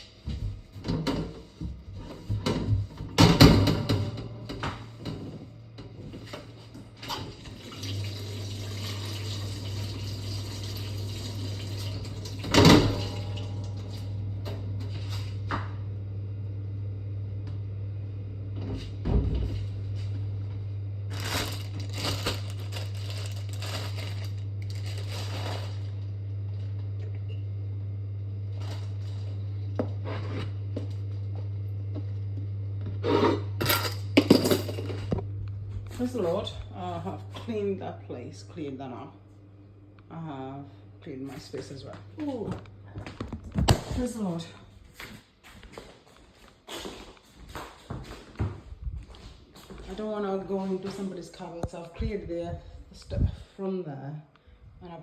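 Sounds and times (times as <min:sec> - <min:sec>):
tap water running into sink: 0:07.1 - 0:13.9
steady low hum: 0:12.4 - 0:46.0.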